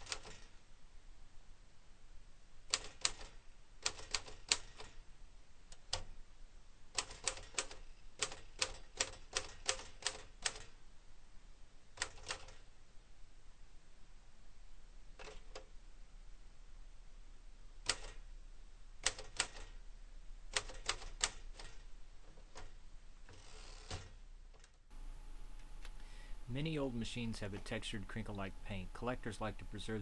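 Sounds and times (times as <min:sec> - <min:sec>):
manual typewriter keys clacking: 0:00.0 - 0:00.5, 0:02.7 - 0:05.0, 0:06.9 - 0:10.8, 0:12.0 - 0:12.6, 0:15.2 - 0:15.7, 0:17.8 - 0:18.2, 0:19.0 - 0:19.8, 0:20.5 - 0:24.8.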